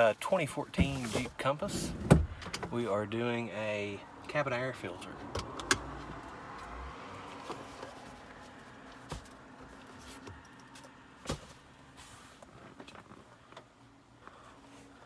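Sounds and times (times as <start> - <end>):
clicks and knocks in car cabin: 0.8 - 2.8, 5.3 - 5.9.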